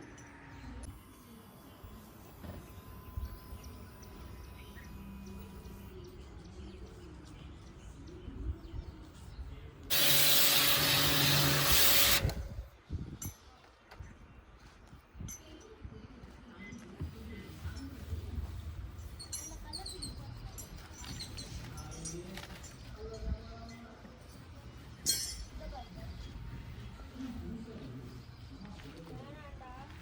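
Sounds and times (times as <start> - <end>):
faint outdoor background: 0.0 - 30.0
pressure washer water jet hissing: 9.9 - 12.4
motor hum: 9.9 - 12.7.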